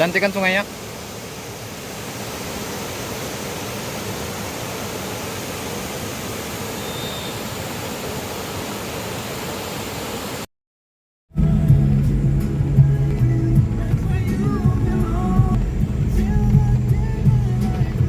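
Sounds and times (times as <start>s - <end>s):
river water rushing: 0.0s - 10.5s.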